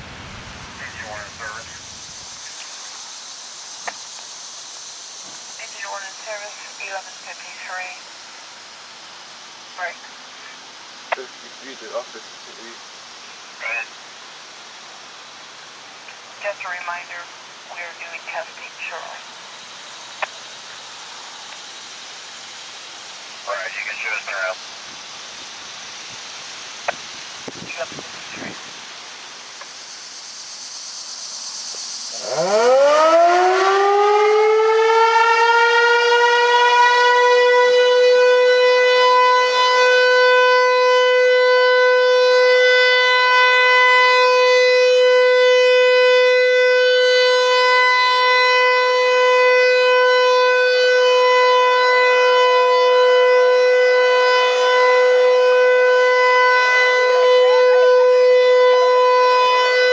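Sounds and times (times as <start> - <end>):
rotating warning siren: 0.0 - 2.8, 5.4 - 8.1, 31.9 - 59.9.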